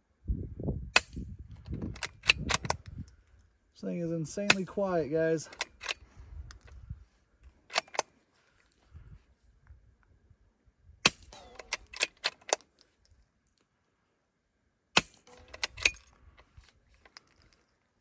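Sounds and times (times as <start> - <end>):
rifle action clicks: 1.0 - 3.0, 5.5 - 6.8, 7.7 - 8.1, 11.1 - 12.7, 15.0 - 17.5
suppressed rifle shots: 11.0 - 12.6.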